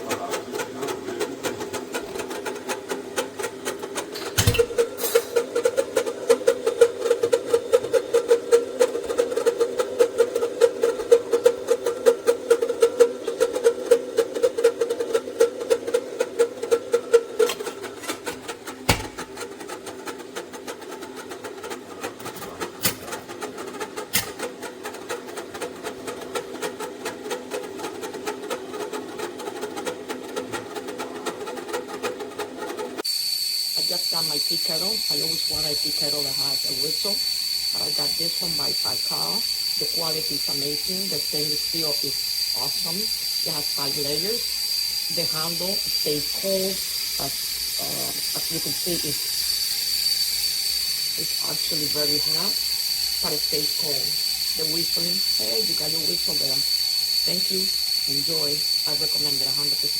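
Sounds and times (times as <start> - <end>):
kettle buzzing and humming: 0.0 - 59.9.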